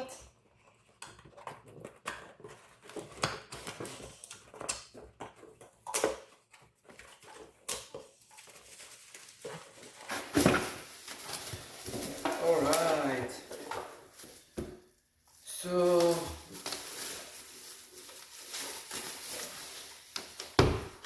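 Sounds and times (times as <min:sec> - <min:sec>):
cardboard box tearing and rustling: 0:08.4 - 0:14.5.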